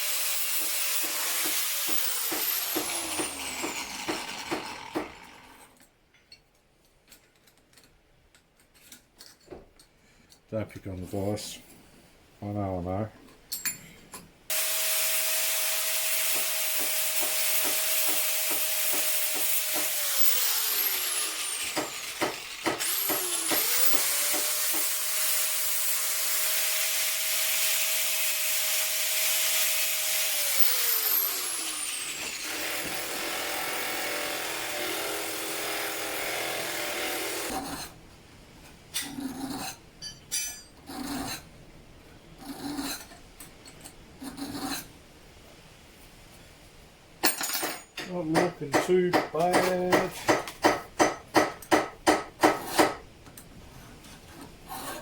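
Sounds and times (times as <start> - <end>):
electric grinder cutting steel: 0.0 - 5.7, 14.5 - 37.7
light metal clinks: 13.5 - 14.0.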